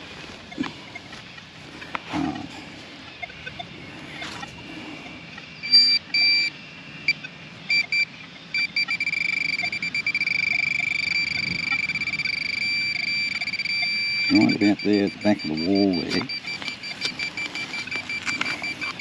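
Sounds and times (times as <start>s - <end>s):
pinpointer beeping: 5.6s - 6.5s, 7.1s - 19.0s.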